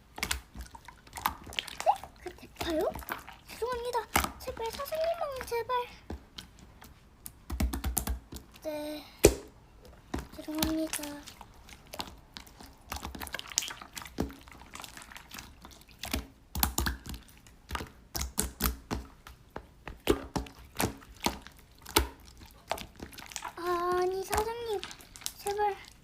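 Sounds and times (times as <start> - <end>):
taps and clicks of small objects: 7.5 - 8.4.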